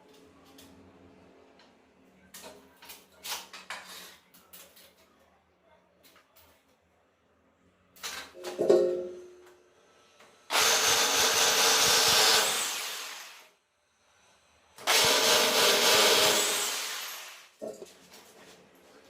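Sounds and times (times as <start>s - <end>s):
electric drill running: 10.5s - 13.5s, 14.8s - 17.5s.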